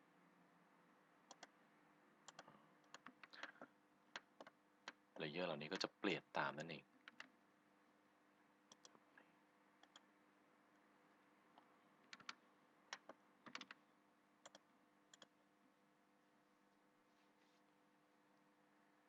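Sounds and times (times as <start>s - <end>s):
faint steady hum: 0.0s - 19.0s
computer mouse clicks: 1.3s - 1.6s, 2.2s - 5.0s, 7.0s - 7.3s, 8.7s - 9.0s, 9.8s - 10.1s, 11.5s - 13.8s, 14.4s - 15.4s.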